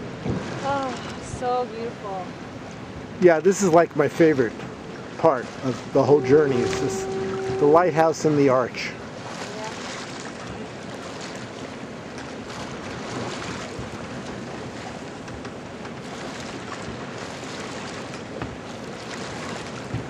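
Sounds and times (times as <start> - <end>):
wind buffeting microphone: 0.0 - 3.2
rushing wind and water: 0.0 - 20.0.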